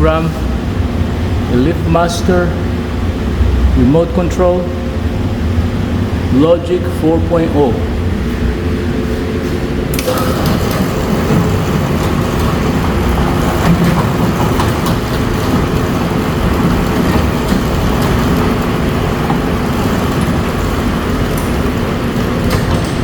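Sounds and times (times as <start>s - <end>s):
garage door opener running: 0.0s - 23.0s
garage door opener click: 9.9s - 23.0s.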